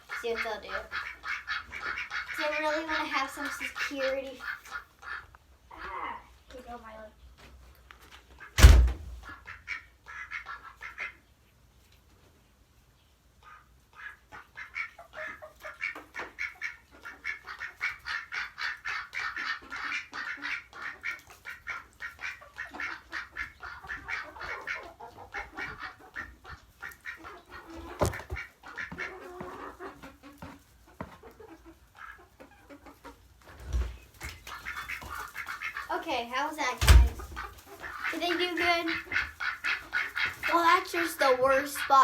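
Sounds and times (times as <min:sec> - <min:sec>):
ducks quacking: 0:00.0 - 0:07.0, 0:08.3 - 0:11.3, 0:13.4 - 0:42.0
sharp knock: 0:08.6 - 0:09.2.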